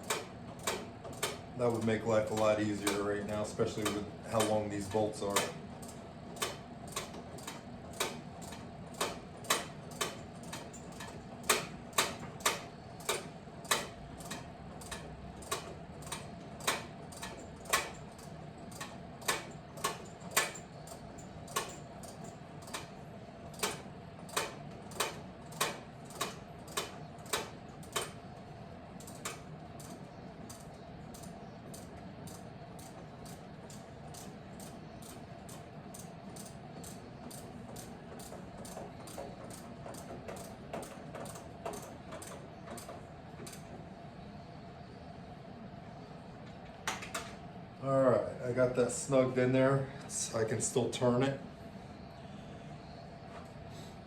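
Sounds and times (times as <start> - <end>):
socket ratchet clicking: 0.0 - 1.4, 5.3 - 22.9, 23.5 - 28.2, 29.0 - 43.6.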